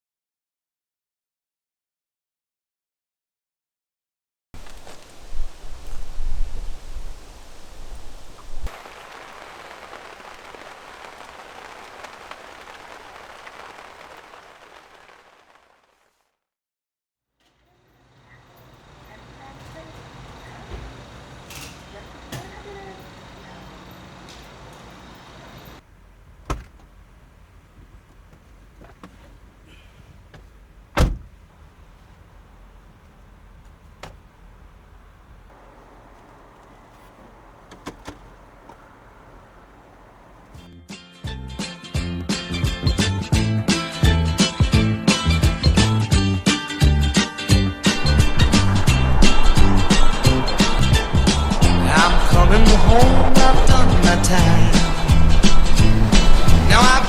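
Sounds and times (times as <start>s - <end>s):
wind rumble on microphone: 4.6s - 15.2s, 48.0s - 57.0s
rain falling on a surface: 4.6s - 16.2s, 18.1s - 40.7s, 47.9s - 57.0s
heavy thump: 30.3s - 31.4s.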